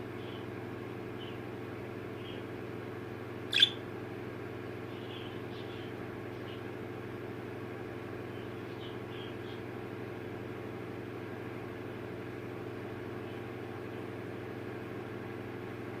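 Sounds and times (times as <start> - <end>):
low mechanical hum: 0.0 - 16.0
budgie chirps: 3.5 - 3.8.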